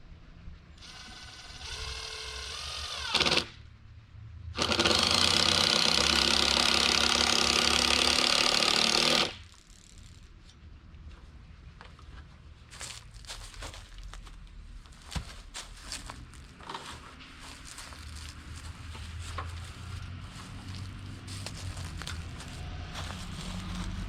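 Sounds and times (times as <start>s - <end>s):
power tool motor running: 0.8s - 3.6s, 4.6s - 9.4s
rattle of driving screws: 0.8s - 3.6s, 4.6s - 10.4s.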